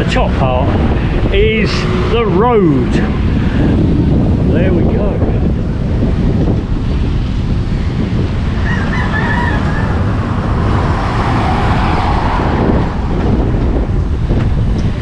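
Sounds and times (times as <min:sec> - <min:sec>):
wind buffeting microphone: 0:00.0 - 0:15.0
rooster crowing: 0:08.6 - 0:10.2.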